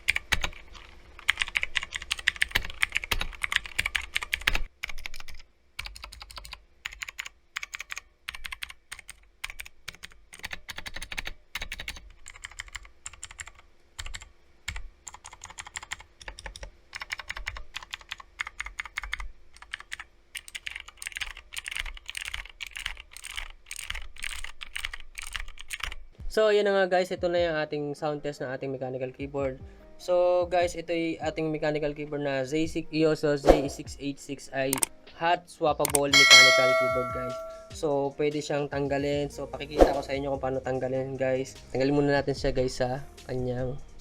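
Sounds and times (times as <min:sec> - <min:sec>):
mechanical keyboard clicks: 0:00.0 - 0:26.0, 0:34.7 - 0:34.9, 0:35.8 - 0:36.3.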